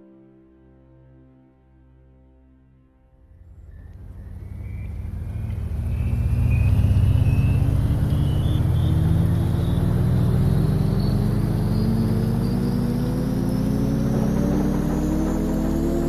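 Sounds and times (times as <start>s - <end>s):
thin whine: 3.3s - 16.0s
vehicle engine speeding up: 3.3s - 16.0s.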